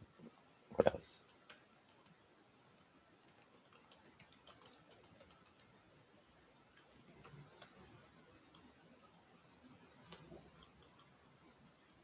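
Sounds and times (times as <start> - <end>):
computer keyboard clicks: 3.3 - 5.8, 6.6 - 7.8.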